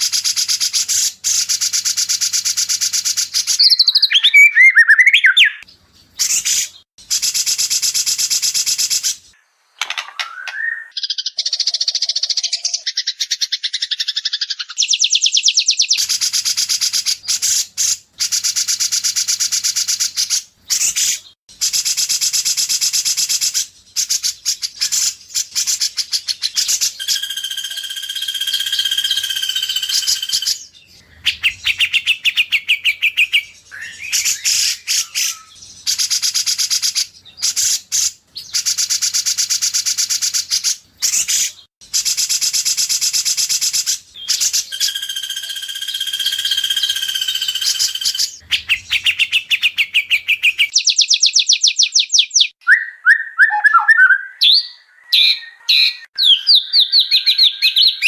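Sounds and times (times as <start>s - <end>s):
bird whistled notes: 0.0s - 5.6s, 19.6s - 30.6s, 43.5s - 58.0s
bird chattering song: 0.0s - 58.0s.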